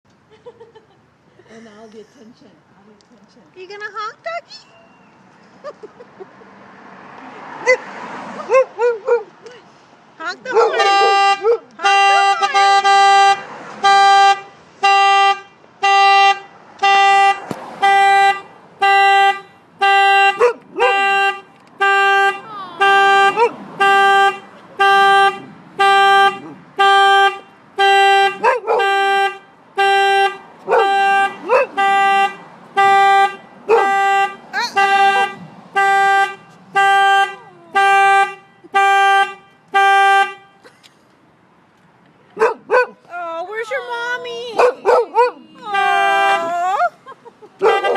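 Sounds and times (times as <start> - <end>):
dog barking: 7.6 - 9.3, 10.5 - 11.7, 20.4 - 21.0, 23.3 - 23.6, 28.4 - 28.9, 30.6 - 31.8, 33.7 - 34.0, 35.0 - 35.4, 42.4 - 43.0, 44.6 - 45.4, 47.6 - 47.9
car horn beeps: 10.5 - 40.7, 43.7 - 46.9, 47.6 - 47.9.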